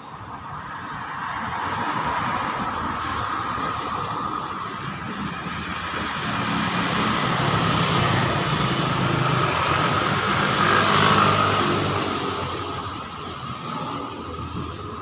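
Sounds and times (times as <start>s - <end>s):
vehicle passing: 5.2s - 15.0s.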